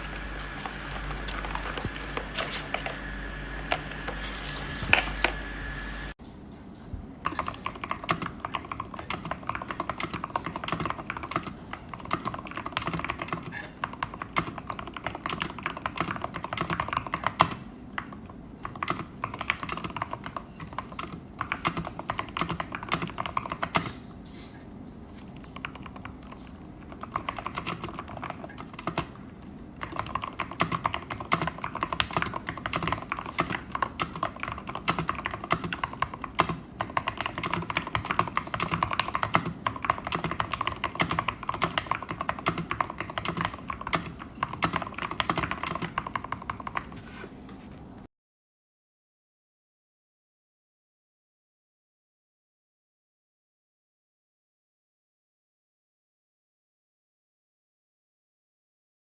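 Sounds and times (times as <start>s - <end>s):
mechanical keyboard typing: 0.0s - 5.4s, 7.2s - 24.0s, 25.4s - 29.2s, 29.8s - 47.0s.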